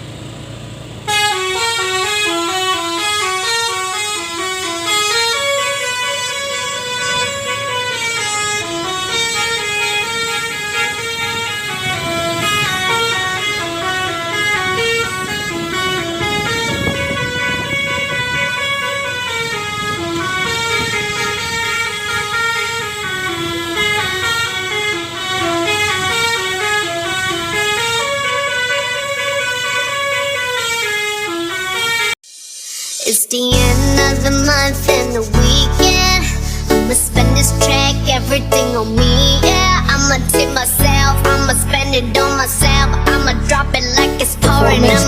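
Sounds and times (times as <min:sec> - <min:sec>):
multi-tone musical air horn: 0:01.0 - 0:32.7, 0:33.5 - 0:45.0.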